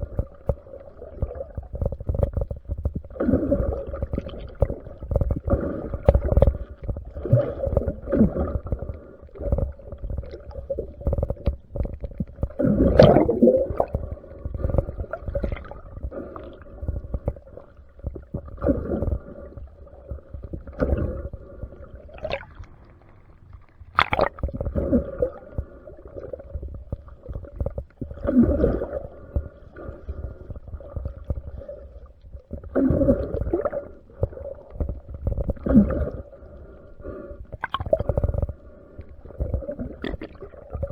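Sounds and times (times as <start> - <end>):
steady underwater hum: 0.0 - 40.9
underwater water and bubbles gurgling: 0.0 - 40.9.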